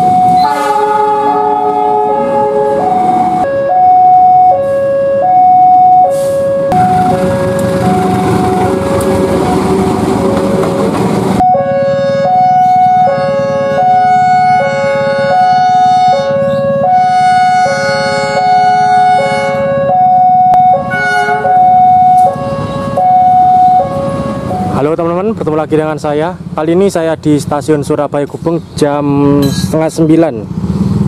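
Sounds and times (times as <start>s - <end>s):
two-tone electronic warning signal: 0.0s - 10.0s, 11.4s - 24.9s.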